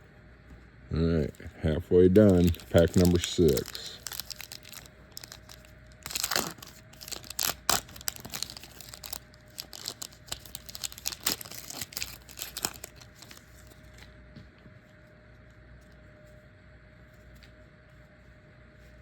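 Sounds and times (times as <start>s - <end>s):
wrapper crinkling: 2.0s - 14.0s
wrapper tearing: 2.1s - 14.0s.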